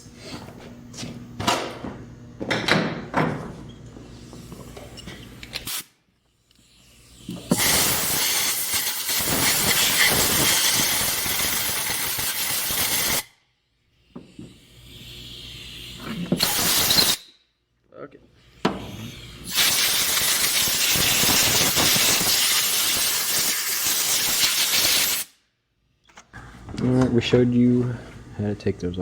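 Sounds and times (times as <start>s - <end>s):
compressed air blowgun hissing: 14.3s - 17.2s, 18.8s - 25.3s.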